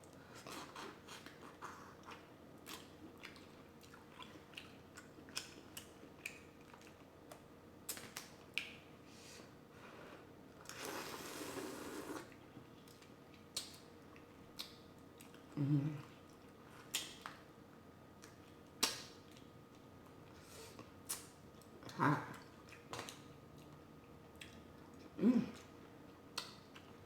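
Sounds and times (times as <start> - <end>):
wet chewing clicks and smacks: 1.1 - 8.8, 12.7 - 15.5, 16.2 - 17.5, 18.2 - 20.2, 21.0 - 27.0.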